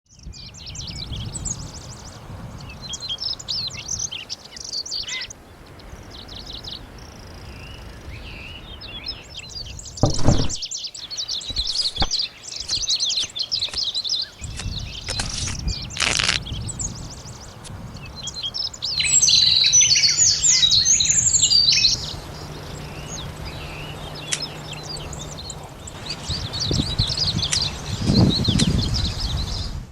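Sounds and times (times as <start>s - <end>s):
wild birds chirping: 0.1s - 29.8s.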